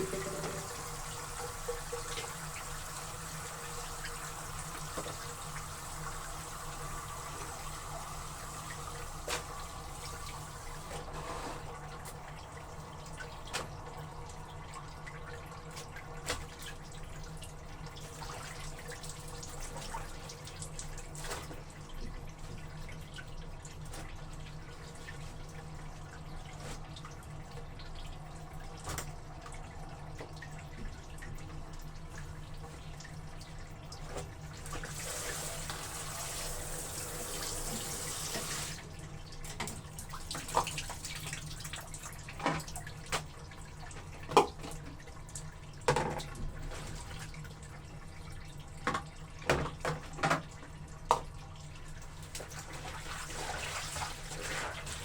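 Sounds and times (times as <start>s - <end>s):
tap running: 0.0s - 1.2s
water dripping and sloshing: 0.0s - 55.0s.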